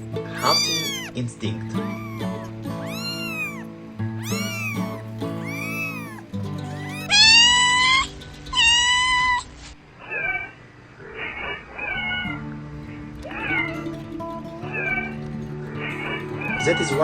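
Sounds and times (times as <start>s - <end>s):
background music: 0.0s - 9.0s, 12.3s - 17.0s
kitten meowing: 0.3s - 1.2s, 1.8s - 9.5s.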